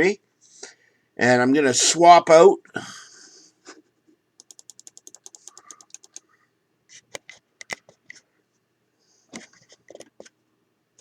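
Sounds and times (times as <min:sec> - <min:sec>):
rapid light clicks: 0:04.4 - 0:06.3.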